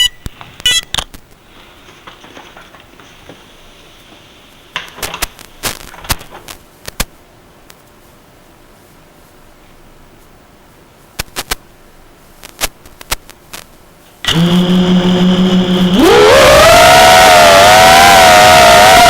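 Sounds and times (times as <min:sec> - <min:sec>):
faint hiss: 0:01.4 - 0:05.9.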